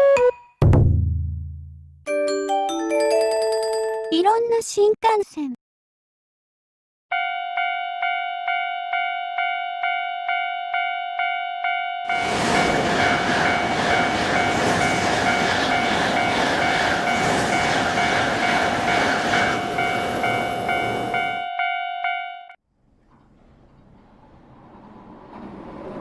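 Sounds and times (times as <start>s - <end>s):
train rushing past: 12.1s - 21.4s, 23.3s - 26.0s
crossing warning bell clanging: 13.0s - 22.6s.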